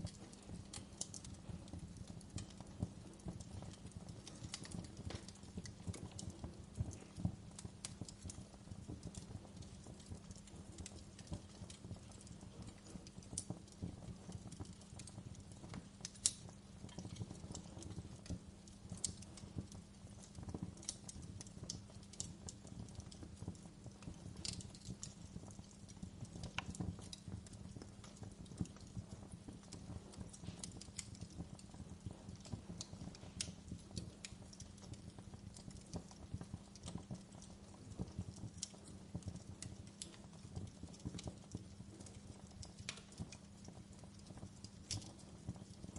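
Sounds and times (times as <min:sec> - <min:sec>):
fire crackling and popping: 0:00.0 - 0:45.9.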